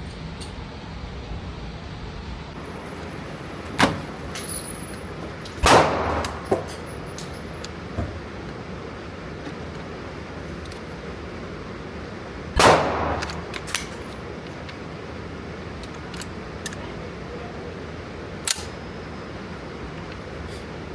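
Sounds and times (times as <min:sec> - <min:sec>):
gunshots: 0:05.6 - 0:06.6, 0:12.6 - 0:13.7.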